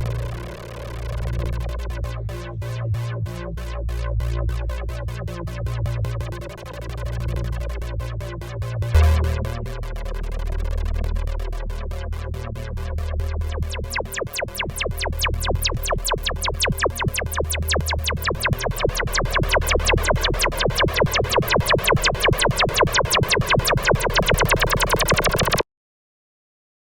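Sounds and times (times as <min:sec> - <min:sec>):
synthesizer clicky pulses: 0:00.0 - 0:02.3, 0:08.9 - 0:11.4, 0:13.5 - 0:25.6
low bass drone: 0:00.0 - 0:25.6
sustained synth mid tones: 0:08.9 - 0:11.2, 0:13.6 - 0:25.6.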